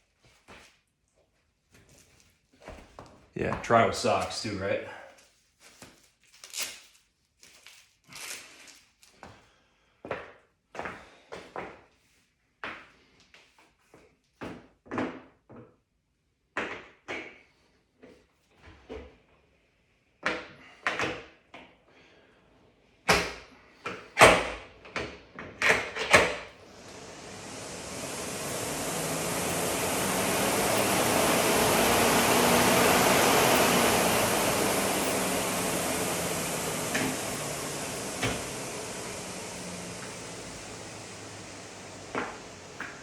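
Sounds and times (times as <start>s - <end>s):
flywheel fan whooshing: 26.6s - 43.0s.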